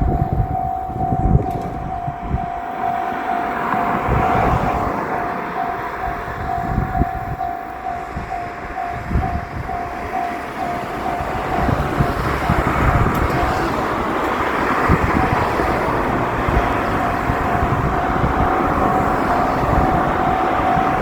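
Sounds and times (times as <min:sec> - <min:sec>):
railroad crossing bell clanging: 0:00.0 - 0:21.0
train rumbling past: 0:00.0 - 0:21.0.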